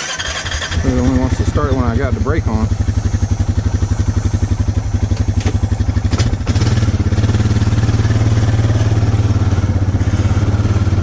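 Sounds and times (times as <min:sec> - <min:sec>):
engine idling: 0:00.0 - 0:11.0.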